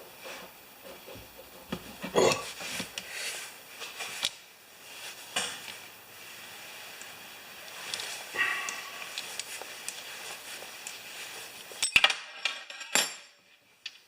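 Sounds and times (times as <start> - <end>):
metal tools clinking: 11.7 - 13.4.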